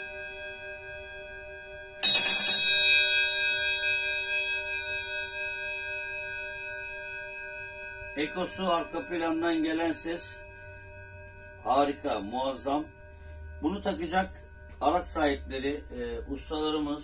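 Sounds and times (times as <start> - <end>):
bell car horn ringing: 2.0 - 4.0.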